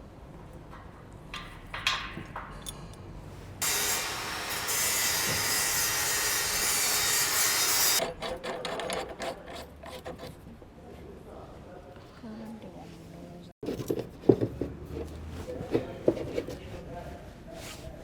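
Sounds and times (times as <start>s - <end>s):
hand tool rasping: 5.0s - 10.4s.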